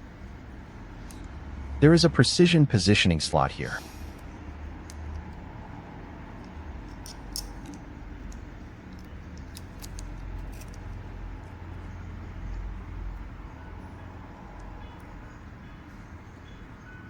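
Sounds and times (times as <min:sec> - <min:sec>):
steady low hum: 0:00.0 - 0:17.0
small metal parts clicking: 0:06.4 - 0:11.6.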